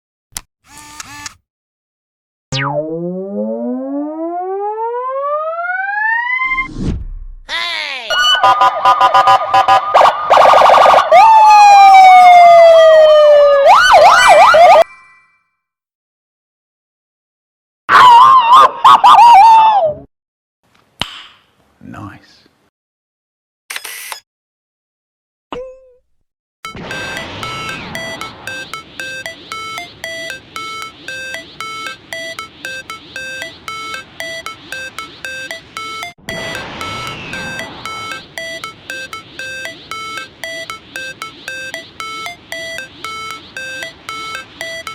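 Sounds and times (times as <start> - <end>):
electronic police siren: 2.5 - 6.7, 8.1 - 14.9, 26.7 - 44.9.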